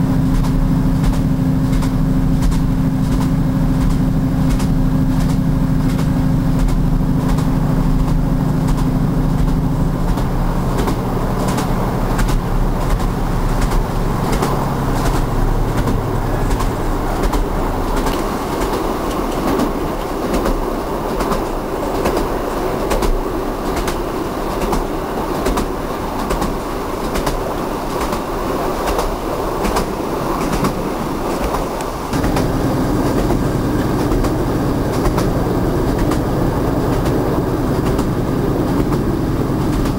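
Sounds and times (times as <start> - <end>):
low hum: 0.0 - 19.9, 32.1 - 39.9
train rumble: 0.0 - 39.9
train wheels clickety-clack: 0.0 - 39.9.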